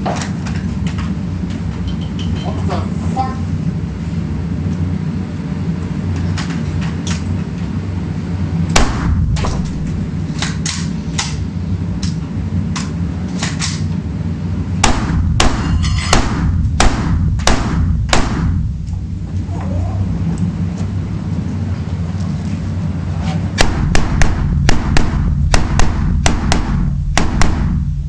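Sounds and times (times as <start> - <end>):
steady low rumble: 0.0 - 28.0
fainter gunshot reports: 8.8 - 10.0, 14.8 - 18.7, 23.6 - 27.9
rifle shots: 8.8 - 10.6, 14.8 - 18.8, 23.6 - 28.0.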